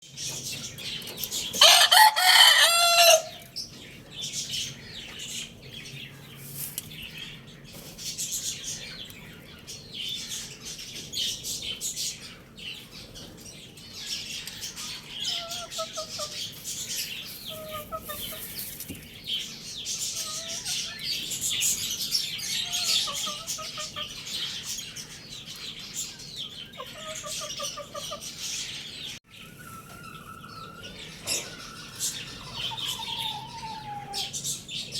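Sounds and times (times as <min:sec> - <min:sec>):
chickens clucking: 0:00.2 - 0:34.9
rooster crowing: 0:01.6 - 0:03.4
chickens rustling and flapping: 0:07.7 - 0:08.2, 0:16.5 - 0:19.2.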